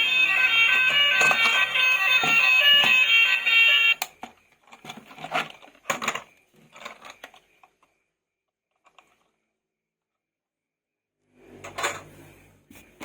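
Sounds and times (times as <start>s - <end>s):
loud electronic tones: 0.0s - 4.0s
plastic toys clicking and rattling: 0.1s - 7.9s.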